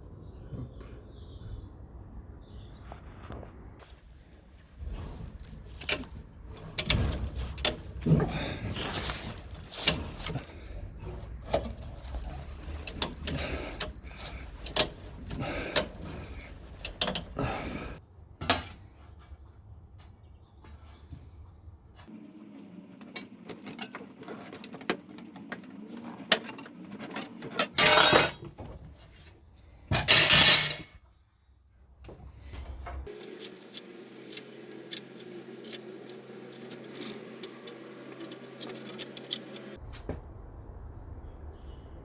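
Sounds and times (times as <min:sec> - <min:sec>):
metal tools clinking on sheet metal: 0:06.8 - 0:10.5, 0:11.5 - 0:18.8, 0:23.2 - 0:28.5, 0:29.9 - 0:31.0, 0:33.1 - 0:39.8.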